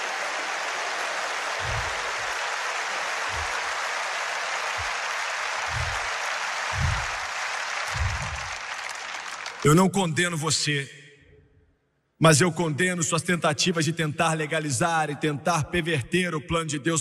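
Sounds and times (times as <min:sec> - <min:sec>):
congregation applauding: 0:00.0 - 0:09.8
dull low thumps: 0:01.6 - 0:02.4, 0:03.2 - 0:03.8, 0:04.7 - 0:08.6.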